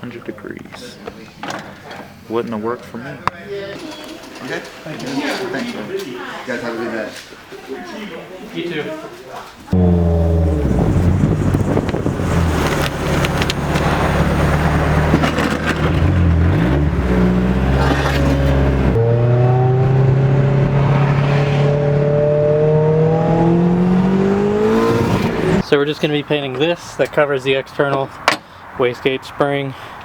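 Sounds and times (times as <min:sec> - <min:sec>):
car engine running: 0:09.8 - 0:25.6.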